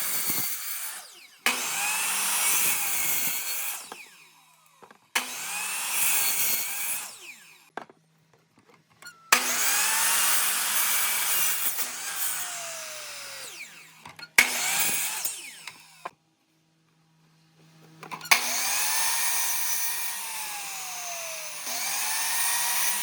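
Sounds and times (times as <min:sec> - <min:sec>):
woodworking tool cutting wood: 0:00.0 - 0:07.8, 0:09.3 - 0:16.2, 0:18.0 - 0:23.0.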